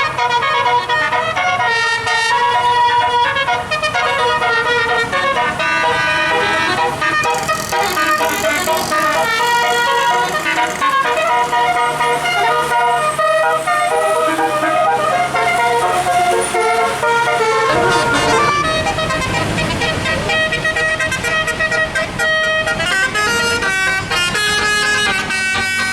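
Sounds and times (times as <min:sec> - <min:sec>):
musical air horn melody: 0:00.0 - 0:25.9.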